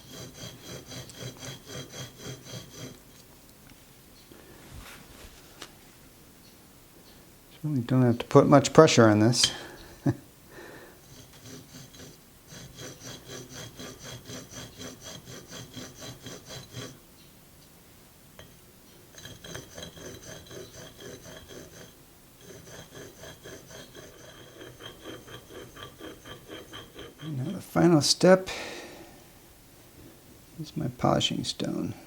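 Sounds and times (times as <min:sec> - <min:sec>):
chisel rubbing on sharpening stone: 0:00.0 - 0:03.2, 0:11.0 - 0:17.0, 0:19.1 - 0:27.6.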